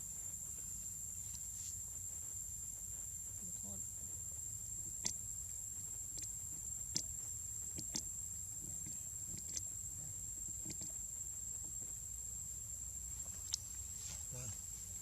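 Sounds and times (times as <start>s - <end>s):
faint clicks: 10.4s - 11.0s.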